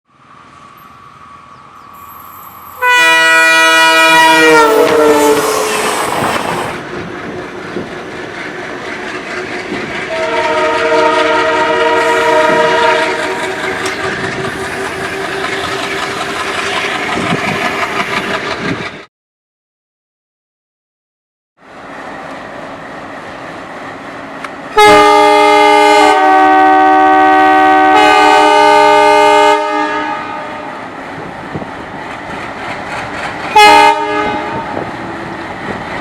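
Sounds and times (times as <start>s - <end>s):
passing train rumble and clatter: 0.1s - 19.1s, 21.6s - 36.0s
train air horn: 2.6s - 6.8s, 10.1s - 16.2s, 24.7s - 30.8s, 33.5s - 34.8s.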